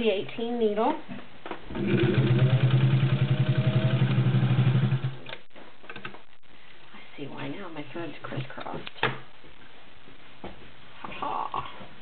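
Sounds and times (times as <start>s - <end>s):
sewing machine stitching: 1.8s - 5.2s.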